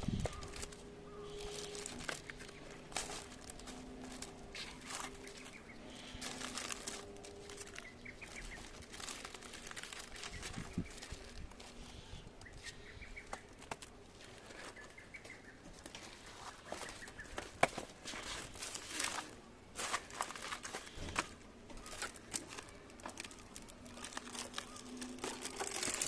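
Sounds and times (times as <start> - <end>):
faint bird chirping: 0.0 - 20.2
crinkling and scraping: 0.0 - 26.0.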